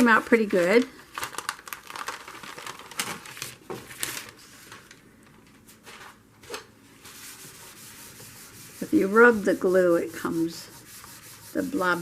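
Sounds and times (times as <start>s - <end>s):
paper crinkling: 0.0s - 6.2s
rubbing glue off paper: 7.1s - 12.0s.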